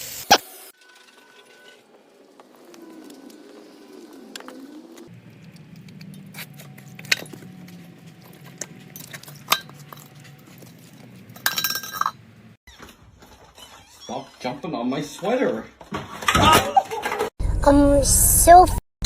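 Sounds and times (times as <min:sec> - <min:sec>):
metal clinking jangle: 0:08.3 - 0:12.2.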